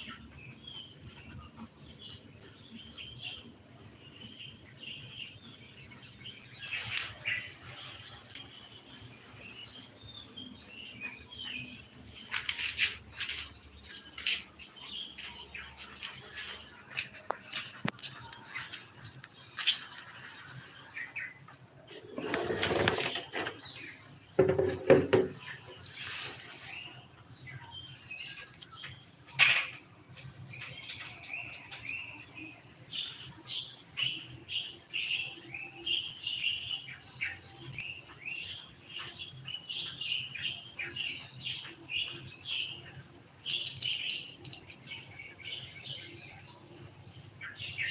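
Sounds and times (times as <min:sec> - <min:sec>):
high insect whine: 0:00.0 - 0:47.9
small birds chirping: 0:00.0 - 0:47.9
rustling noises: 0:12.1 - 0:27.0.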